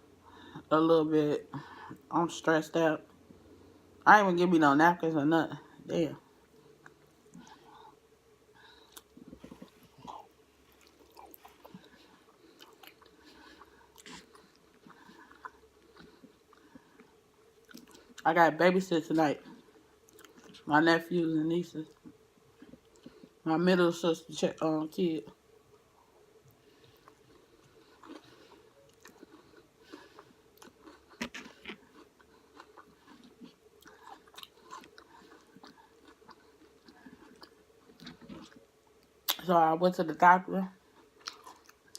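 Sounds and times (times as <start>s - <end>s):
soft chewing: 5.5s - 18.3s, 19.3s - 20.7s, 21.8s - 23.4s, 25.3s - 39.5s, 40.7s - 41.9s.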